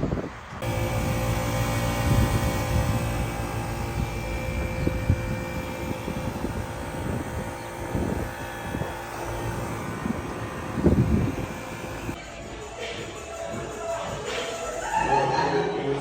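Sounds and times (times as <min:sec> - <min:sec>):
hvac unit droning: 0:00.0 - 0:12.4.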